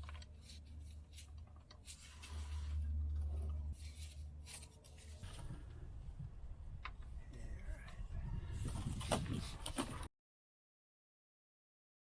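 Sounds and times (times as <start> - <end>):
metal scrapes: 0.0 - 5.7
low steady rumble: 0.0 - 8.9.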